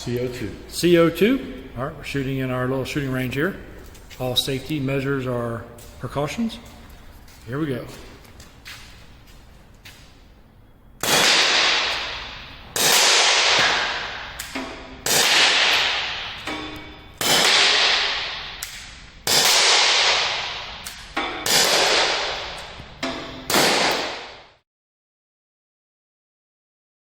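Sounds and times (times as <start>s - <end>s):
air pistol shots cracking: 11.0s - 24.6s.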